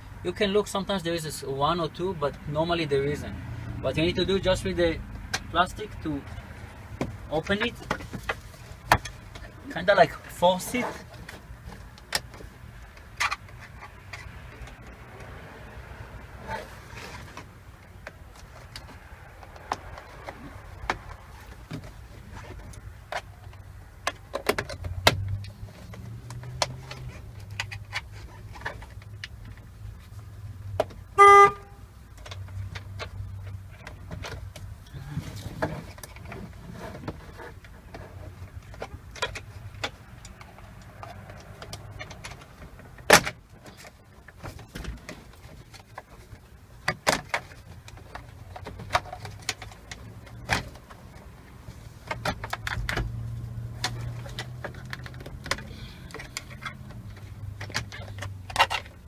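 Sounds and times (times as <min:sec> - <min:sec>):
car horn: 0:31.1 - 0:31.8
plastic covers clicking and snapping: 0:35.5 - 0:59.0.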